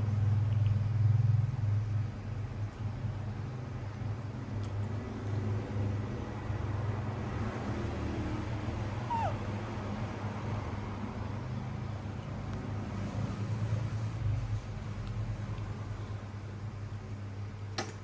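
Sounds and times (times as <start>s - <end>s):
steady low hum: 0.0s - 18.0s
baby monkey squeak: 9.0s - 9.5s.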